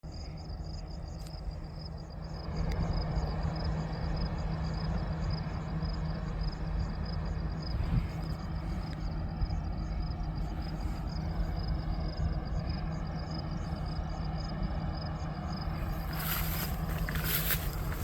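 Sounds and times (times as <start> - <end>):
combine harvester running: 0.2 - 18.0.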